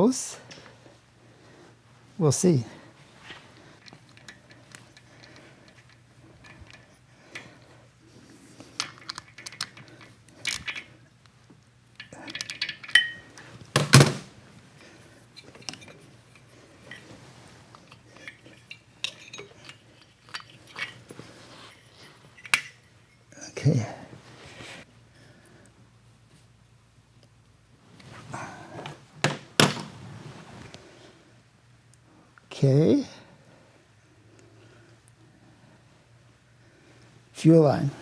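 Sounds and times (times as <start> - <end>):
metal parts clinking and tapping: 3.2 - 7.6, 8.6 - 11.1, 11.9 - 23.4.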